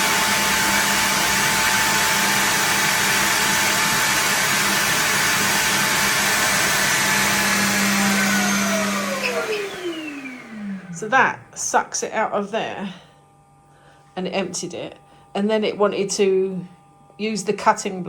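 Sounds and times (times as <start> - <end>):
suction motor whine: 0.0 - 11.4.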